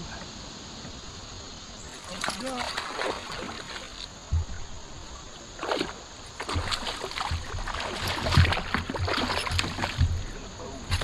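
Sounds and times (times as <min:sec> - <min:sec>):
water splashing at a kayak: 0:01.7 - 0:11.0
knocks against kayak hull: 0:06.4 - 0:11.0.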